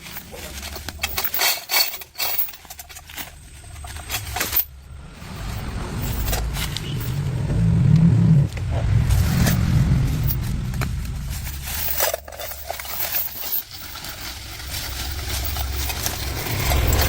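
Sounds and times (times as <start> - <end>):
metal parts clinking: 0.0 - 7.2, 11.4 - 17.0
engine running steadily: 0.0 - 17.0
low hum: 2.4 - 17.0.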